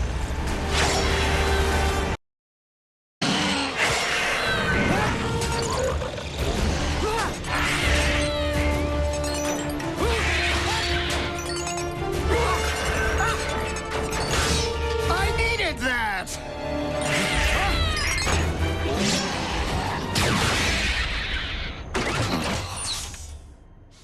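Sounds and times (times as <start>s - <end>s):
dramatic orchestral score: 3.8s - 21.7s.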